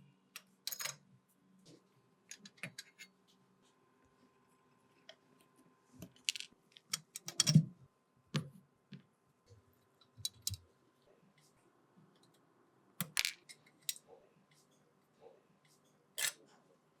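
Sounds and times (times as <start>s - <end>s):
small tools clicking and knocking: 6.0s - 7.6s.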